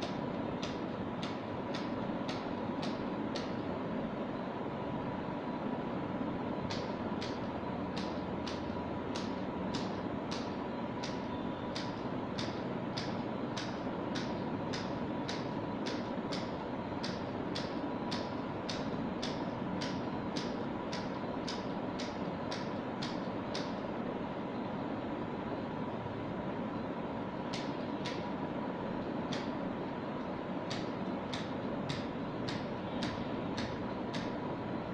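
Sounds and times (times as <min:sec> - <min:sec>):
steady hum: 0:00.0 - 0:34.9.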